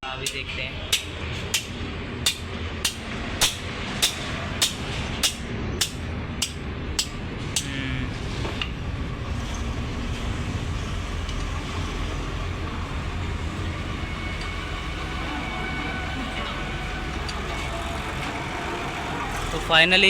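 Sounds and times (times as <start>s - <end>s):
steady low rumble: 0.0s - 20.0s
hand tool clicks: 2.3s - 7.7s.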